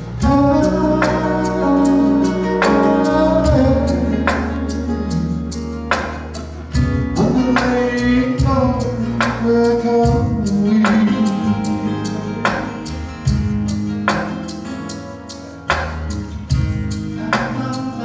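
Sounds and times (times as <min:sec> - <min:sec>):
bass notes: 0:00.0 - 0:18.0
strummed guitars: 0:00.0 - 0:18.0
men singing: 0:00.2 - 0:04.7, 0:06.9 - 0:12.9, 0:17.2 - 0:18.0.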